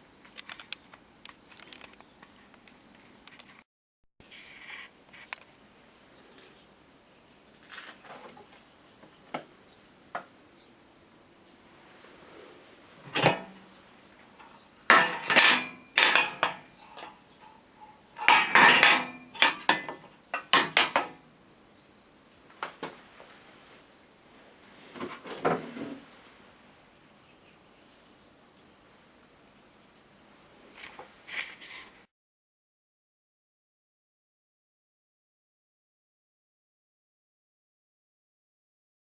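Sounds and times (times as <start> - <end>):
hard objects clicking and clattering: 13.0 - 13.6, 14.4 - 21.2.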